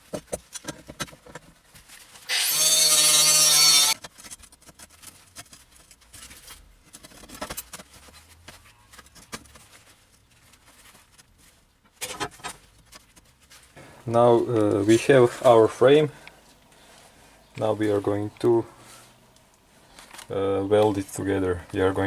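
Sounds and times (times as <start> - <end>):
angle grinder cutting steel: 2.3 - 4.0.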